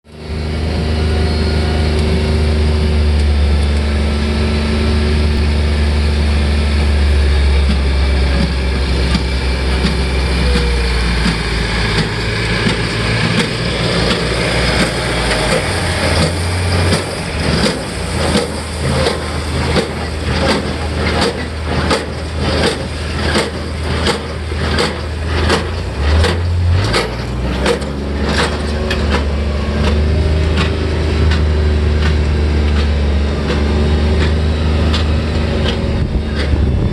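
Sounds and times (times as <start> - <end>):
tractor engine running: 0.0 - 36.9.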